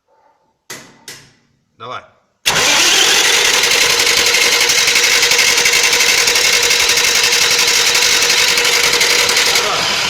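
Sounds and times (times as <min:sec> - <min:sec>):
starter cranking diesel engine: 0:02.5 - 0:10.0.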